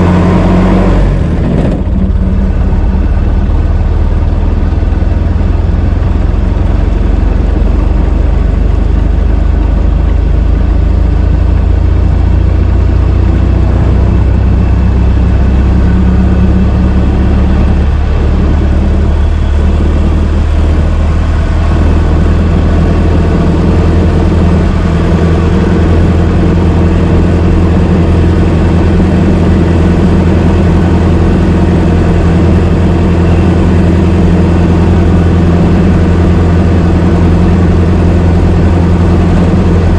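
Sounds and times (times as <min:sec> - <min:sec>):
car engine running while driving: 0:00.0 - 0:39.9.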